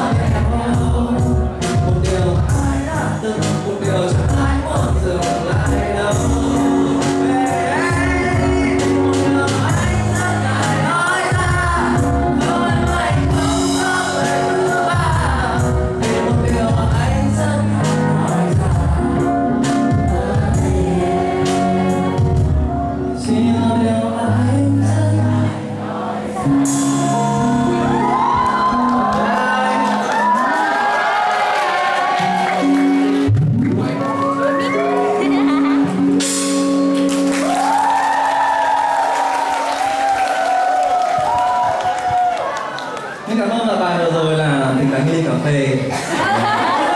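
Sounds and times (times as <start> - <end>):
drum beat: 0.0 - 3.1, 4.1 - 17.2
person singing: 0.0 - 30.9
live pop band playing: 0.0 - 46.9.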